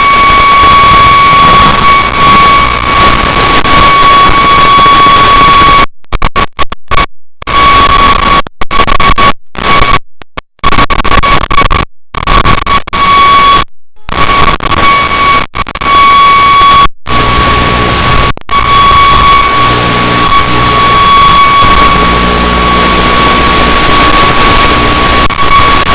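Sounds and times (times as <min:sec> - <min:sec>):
steady high whine: 0:00.0 - 0:05.8, 0:13.0 - 0:25.9
video receiver static hiss: 0:00.0 - 0:25.9.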